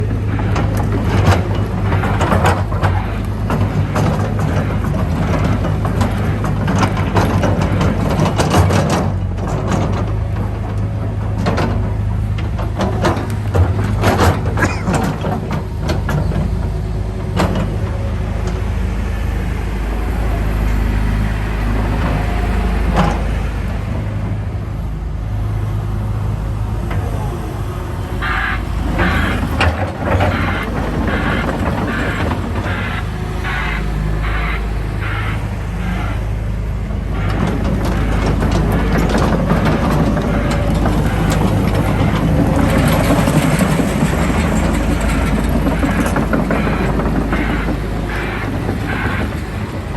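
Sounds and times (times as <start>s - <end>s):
excavator diesel engine running: 0.0s - 49.9s
sharp knocks and clanks: 0.3s - 18.7s, 28.1s - 36.3s, 37.2s - 49.9s
evenly spaced higher pulses: 25.8s - 36.4s.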